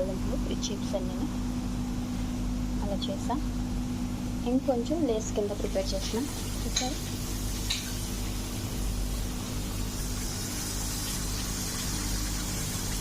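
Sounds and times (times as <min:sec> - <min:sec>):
chips frying in hot oil: 0:05.2 - 0:13.0.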